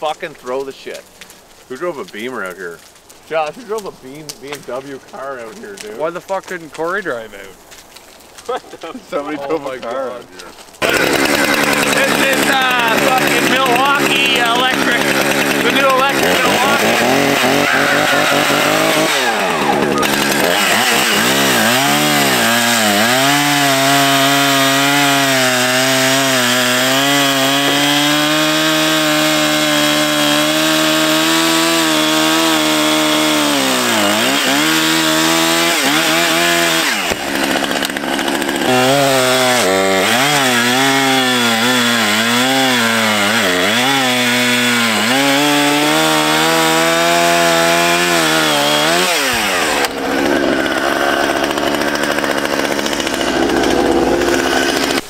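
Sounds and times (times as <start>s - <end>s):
chainsaw cutting wood: 0.0s - 55.0s.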